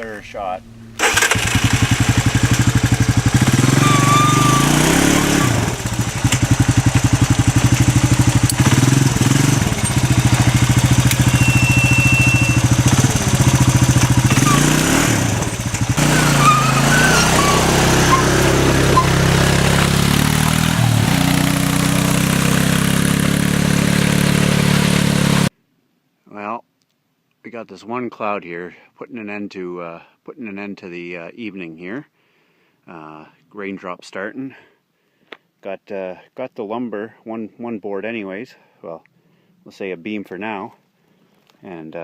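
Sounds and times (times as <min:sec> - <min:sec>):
atv engine revving under load: 0:01.0 - 0:25.5.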